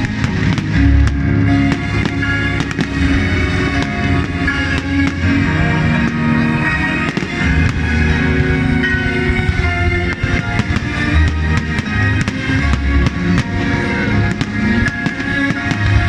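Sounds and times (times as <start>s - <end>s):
fireworks bangs and crackles: 0.0s - 16.0s
music with steady beat: 0.0s - 16.0s.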